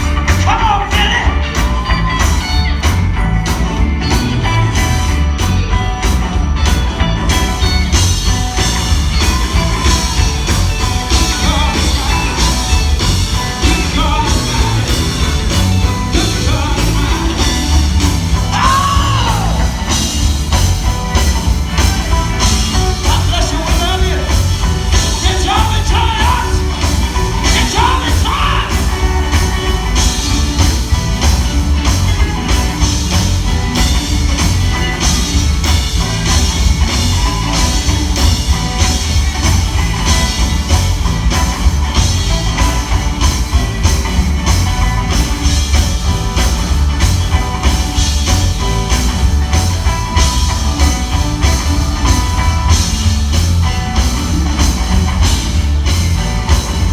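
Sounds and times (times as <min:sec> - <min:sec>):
singer singing and shouting: 0:00.0 - 0:01.7, 0:09.2 - 0:20.2, 0:21.6 - 0:33.8
live gospel band playing: 0:00.0 - 0:56.9.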